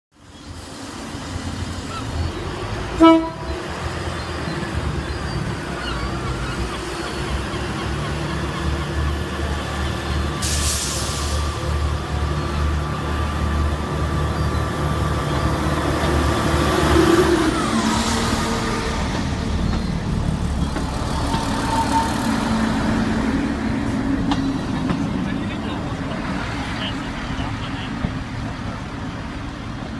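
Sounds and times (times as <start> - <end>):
diesel train engine running: 0.4 - 29.9
air hiss blast: 10.4 - 11.6.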